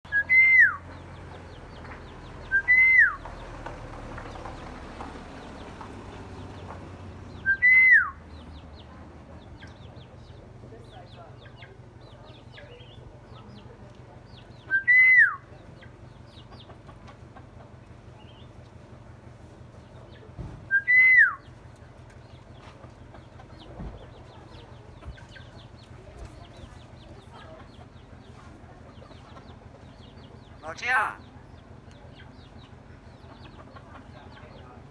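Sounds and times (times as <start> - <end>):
myna whistled calls: 2.4 - 3.2, 7.4 - 8.2, 14.6 - 15.5, 20.7 - 21.5
myna whistling: 7.4 - 8.2.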